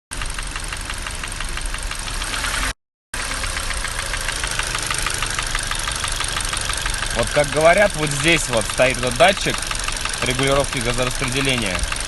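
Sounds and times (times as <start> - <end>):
car engine running: 0.1 - 12.0
fast engine tapping: 0.1 - 12.0.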